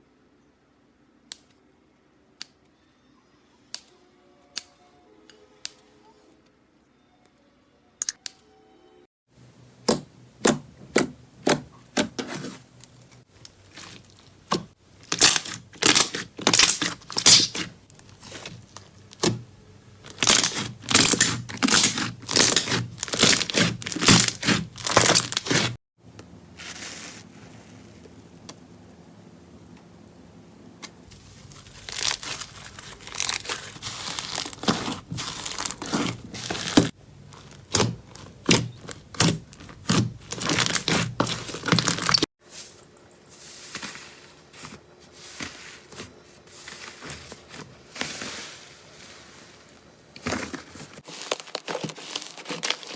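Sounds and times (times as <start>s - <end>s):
crunchy slime crackling: 13.2s - 25.8s, 31.1s - 42.3s, 50.2s - 52.9s.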